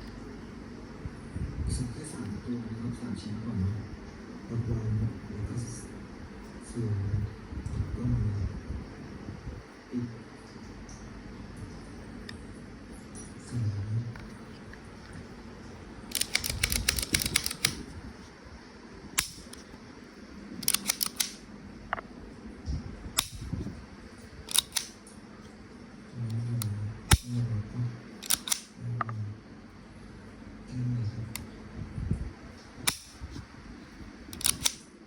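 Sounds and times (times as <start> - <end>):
gas pistol metallic clicks: 16.1 - 17.8, 19.2 - 19.6, 20.6 - 21.4, 23.2 - 23.5, 24.5 - 24.9, 27.1 - 27.3, 28.2 - 28.7, 32.9 - 33.2, 34.3 - 34.9.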